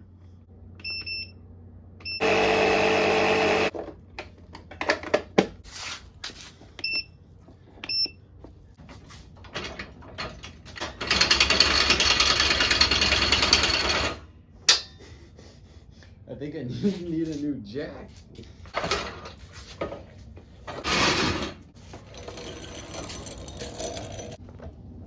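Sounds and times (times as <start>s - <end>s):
power tool motor running: 2.2s - 3.7s.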